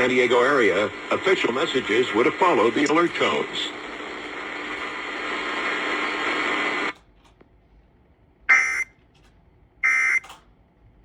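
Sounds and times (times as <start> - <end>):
radio hiss: 0.0 - 7.0, 8.5 - 8.9, 9.8 - 10.3.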